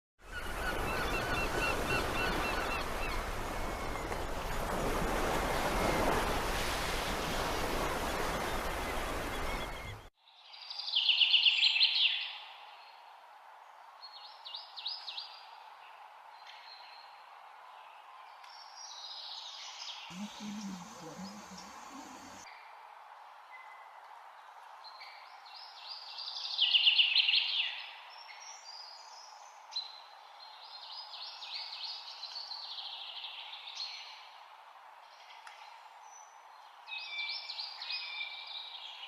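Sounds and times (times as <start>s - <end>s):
bird harsh calls: 20.1s - 22.4s.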